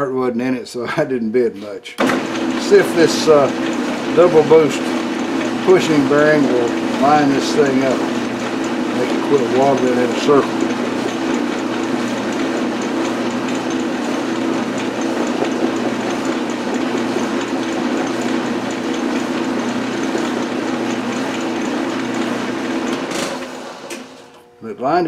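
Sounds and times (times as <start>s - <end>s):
metal lathe running: 2.0s - 25.0s.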